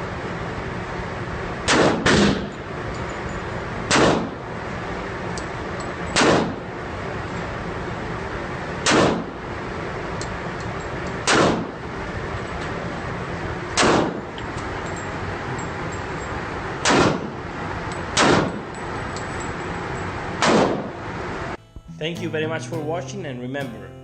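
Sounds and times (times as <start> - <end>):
steady background noise: 0.0 - 21.6
pistol shots: 1.7 - 2.4, 3.9 - 4.4, 6.2 - 6.6, 8.8 - 9.3, 11.3 - 11.7, 16.8 - 17.2.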